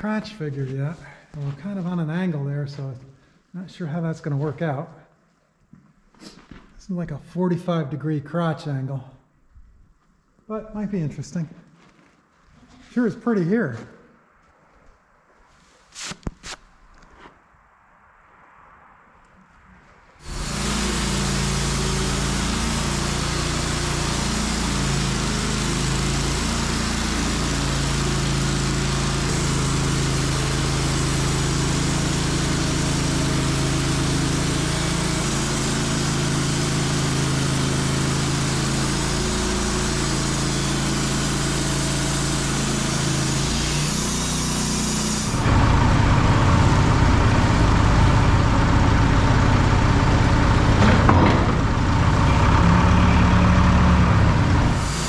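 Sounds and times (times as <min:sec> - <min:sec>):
band blade sawing log: 0:20.2 - 0:55.0
sawmill engine drone: 0:20.2 - 0:55.0.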